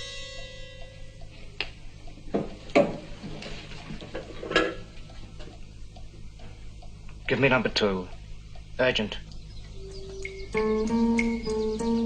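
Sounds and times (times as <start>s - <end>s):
music track: 0.0s - 1.4s, 9.7s - 12.0s
clock ticking: 0.0s - 2.3s, 5.0s - 12.0s.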